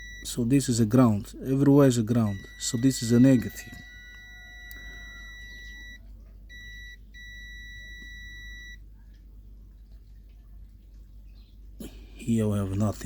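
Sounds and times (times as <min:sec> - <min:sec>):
multimeter continuity beep: 0:00.0 - 0:00.8, 0:02.0 - 0:08.8.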